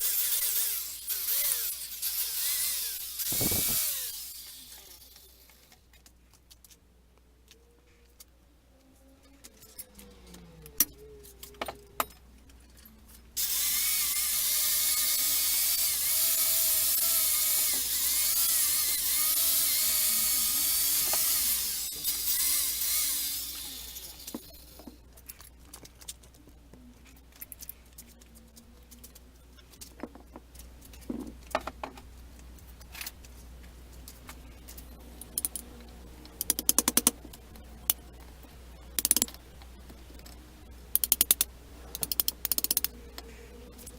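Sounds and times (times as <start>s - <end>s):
power tool whining: 0.0s - 5.6s, 13.4s - 24.6s
sharp clicks and knocks: 36.3s - 38.0s, 39.0s - 39.4s.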